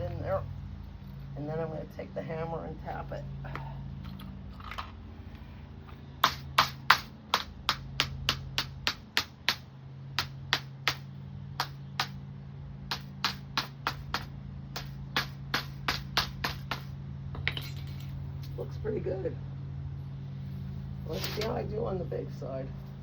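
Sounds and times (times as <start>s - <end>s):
steady low hum: 0.0s - 23.0s
hammer tapping metal spline: 12.9s - 17.9s.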